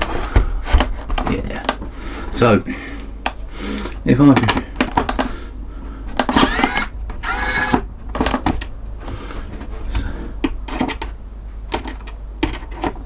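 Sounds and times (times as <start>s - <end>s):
sharp clicks of screwdriver bit: 6.2s - 7.8s
small geared motor whining: 6.2s - 8.0s.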